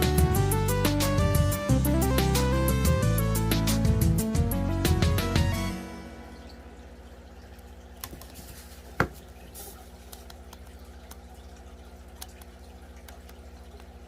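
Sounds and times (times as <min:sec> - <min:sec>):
water dripping: 0:06.1 - 0:14.0.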